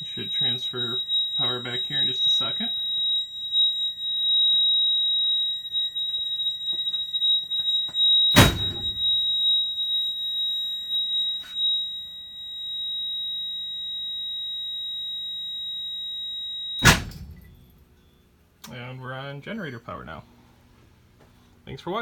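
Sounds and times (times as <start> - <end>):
high-pitched electronic alarm tone: 0.0 - 17.8
transfer switch clunk: 8.4 - 9.2, 16.8 - 18.0.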